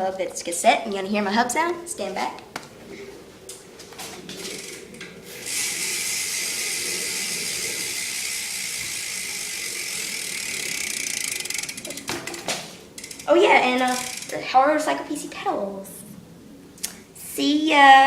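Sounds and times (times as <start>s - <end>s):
bicycle hub freewheeling buzz: 4.4s - 14.6s.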